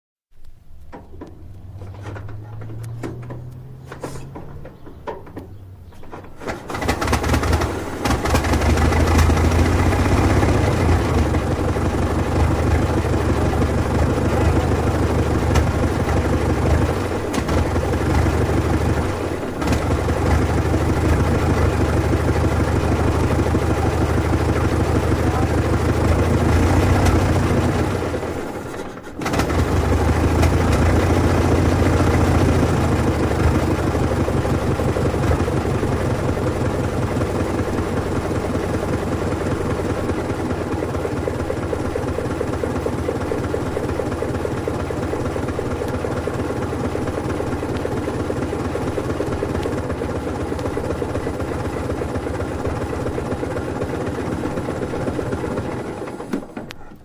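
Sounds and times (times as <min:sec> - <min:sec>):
car engine putter: 0:00.4 - 0:22.2.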